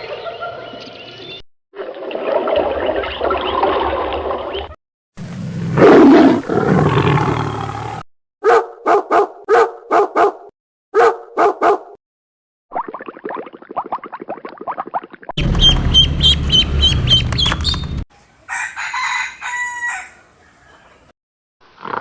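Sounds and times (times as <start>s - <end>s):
dog barking: 8.4s - 12.0s.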